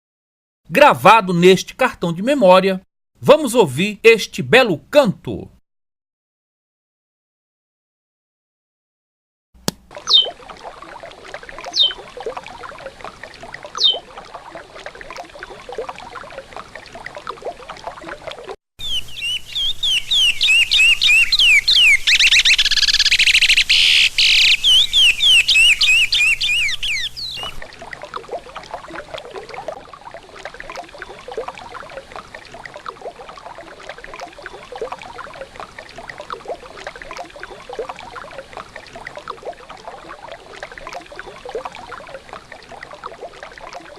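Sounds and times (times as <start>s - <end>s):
bird whistling song: 10.1s - 10.3s, 11.7s - 12.0s, 13.8s - 14.0s, 18.8s - 27.6s.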